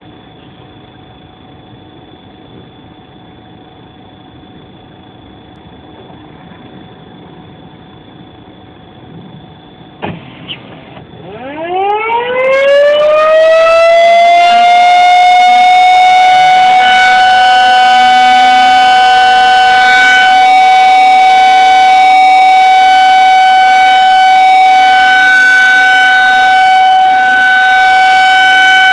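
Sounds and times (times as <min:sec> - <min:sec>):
tornado warning siren wailing: 0:00.0 - 0:28.9.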